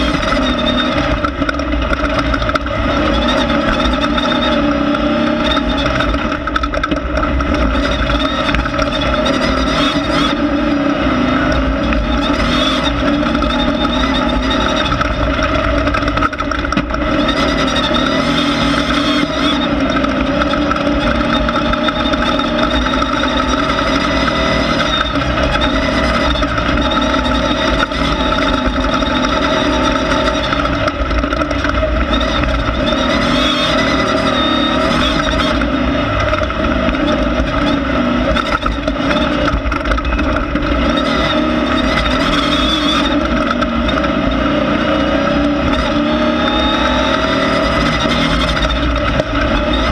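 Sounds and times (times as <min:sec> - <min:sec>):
car knocking and clattering: 0:00.0 - 0:49.9
race car engine at high revs: 0:00.0 - 0:49.9.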